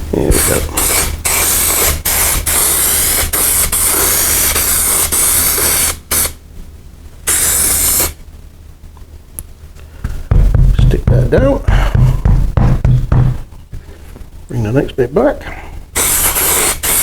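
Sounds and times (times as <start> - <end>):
aerosol spray hissing: 0.3 - 6.4, 7.2 - 8.2, 16.0 - 17.0.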